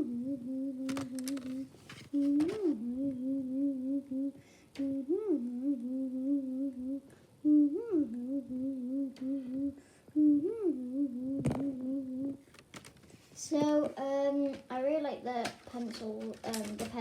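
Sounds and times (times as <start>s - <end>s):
person humming: 0.0s - 12.4s
plastic packaging crinkling: 0.9s - 2.7s, 15.5s - 17.0s.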